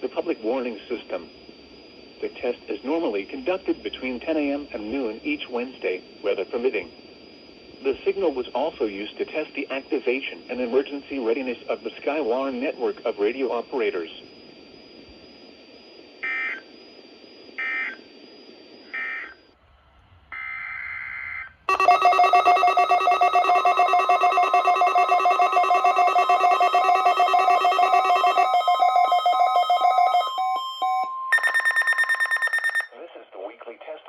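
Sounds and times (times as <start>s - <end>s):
radio hiss: 0.0s - 19.4s
buzzy pulsing alarm tone: 0.1s - 19.6s, 21.7s - 32.9s
chirping digital data tones: 21.7s - 32.9s.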